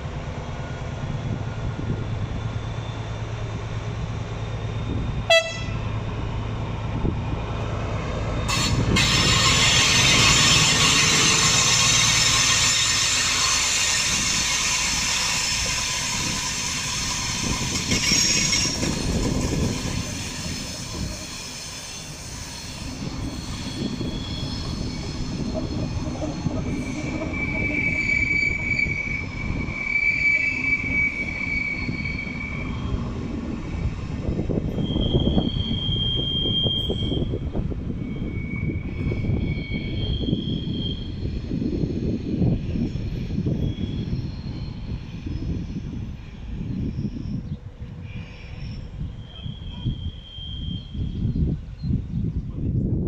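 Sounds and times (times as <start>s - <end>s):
locomotive engine hum: 0.0s - 38.3s
train brakes squealing: 0.6s - 6.1s, 8.3s - 52.2s.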